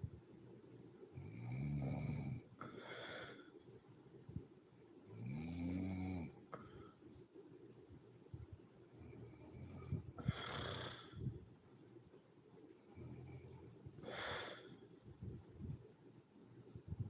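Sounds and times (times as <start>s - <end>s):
woman snoring: 9.6s - 11.2s.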